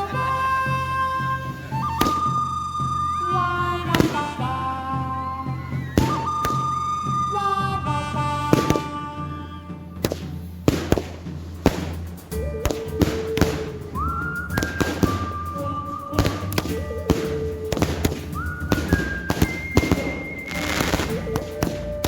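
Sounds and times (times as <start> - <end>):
whistling fireworks: 0.0 - 4.6, 5.8 - 9.2, 10.0 - 22.0
fireworks banging and crackling: 1.9 - 2.4, 6.0 - 6.8, 8.5 - 9.0, 10.0 - 22.0.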